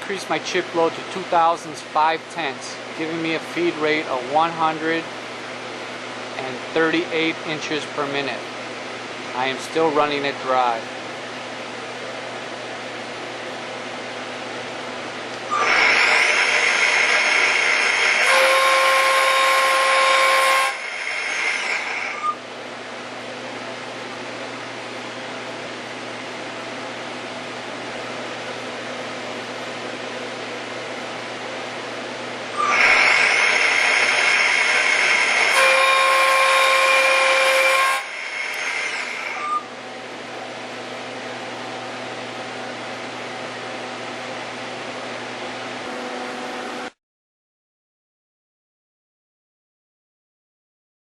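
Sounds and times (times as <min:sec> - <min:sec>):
machine low hum: 0:00.0 - 0:47.0
lathe spindle running: 0:15.3 - 0:22.4, 0:32.5 - 0:39.8
thread mill cutting steel: 0:15.3 - 0:22.4, 0:32.6 - 0:39.6.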